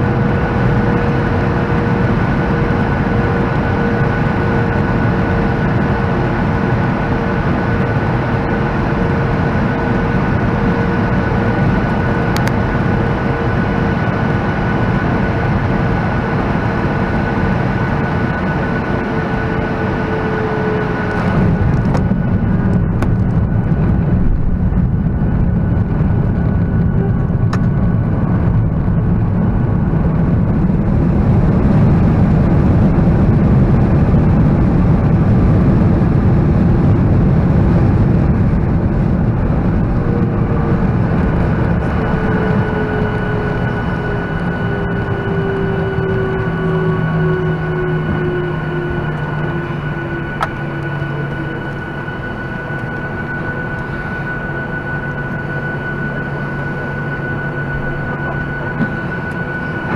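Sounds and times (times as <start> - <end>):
aircraft cabin engine drone: 0.0 - 59.9
high engine whine: 0.0 - 59.9.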